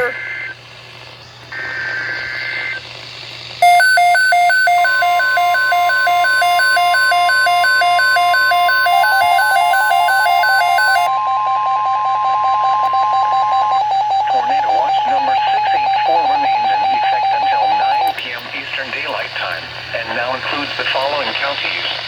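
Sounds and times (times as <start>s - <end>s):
alternating electronic alert beeping: 3.6s - 11.1s
two-tone data burst: 3.6s - 11.2s
steady warning tone: 3.6s - 18.1s.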